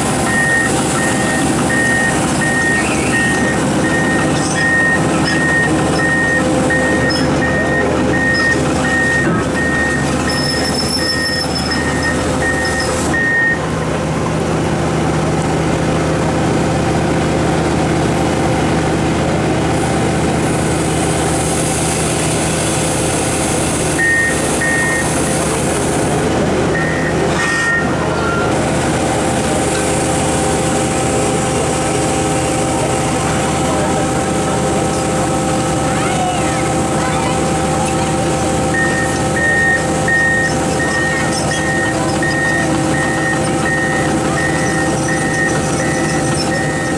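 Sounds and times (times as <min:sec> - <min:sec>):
excavator running: 0:00.0 - 0:46.9
warning beeper beeping: 0:00.2 - 0:13.6, 0:36.0 - 0:46.9.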